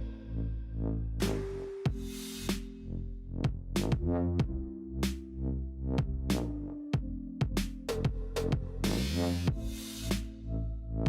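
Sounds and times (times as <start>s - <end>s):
deep synth bass: 0.0s - 11.0s
drum machine hits: 1.9s - 2.2s.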